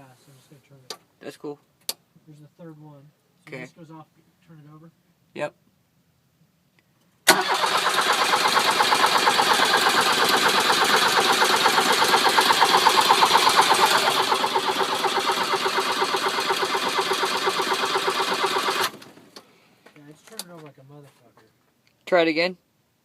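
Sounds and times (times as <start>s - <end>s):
diesel engine cranking: 7.3s - 19.4s.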